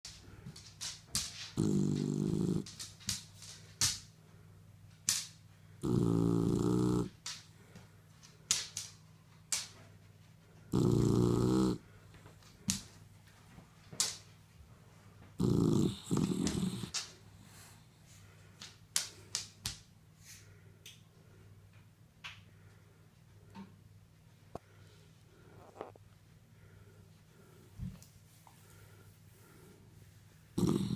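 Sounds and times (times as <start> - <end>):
puppy snoring: 1.6 - 2.8, 5.8 - 7.2, 10.7 - 12.0, 15.4 - 17.0, 25.4 - 26.0, 30.6 - 30.9.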